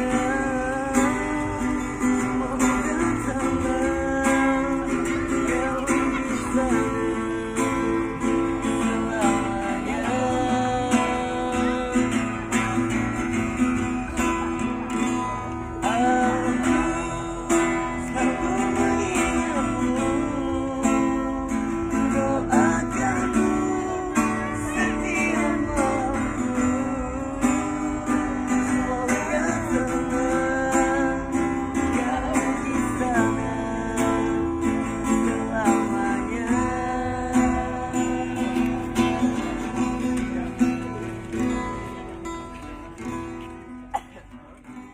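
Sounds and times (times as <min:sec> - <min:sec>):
acoustic guitar strumming: 0:00.0 - 0:44.9
person singing: 0:15.8 - 0:40.6.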